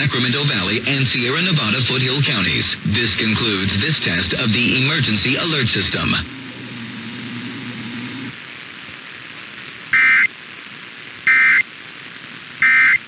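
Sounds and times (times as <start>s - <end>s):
radio hiss: 0.0s - 13.0s
buzzing digital data bursts: 9.9s - 10.3s, 11.2s - 11.7s, 12.6s - 13.0s.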